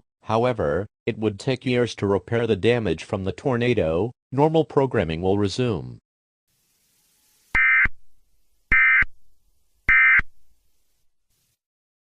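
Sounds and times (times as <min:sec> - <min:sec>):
data tone bursts: 0:07.5 - 0:08.0, 0:08.7 - 0:09.1, 0:09.9 - 0:10.3.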